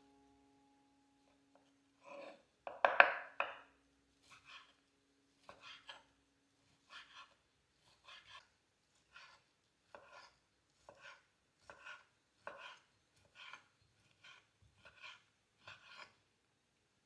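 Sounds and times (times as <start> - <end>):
knife cutting on cutting board: 4.2 - 4.8, 5.4 - 6.1, 6.8 - 16.2.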